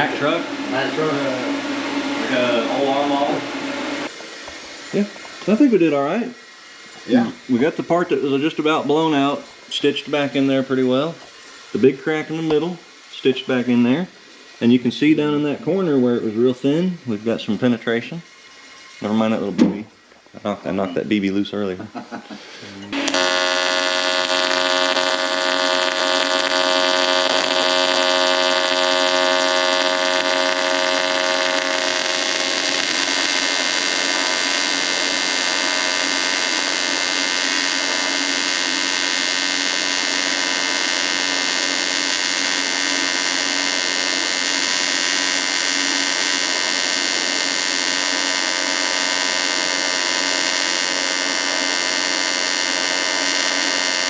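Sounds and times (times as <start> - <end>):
welding arc buzzing: 0.0 - 21.8, 22.5 - 54.0.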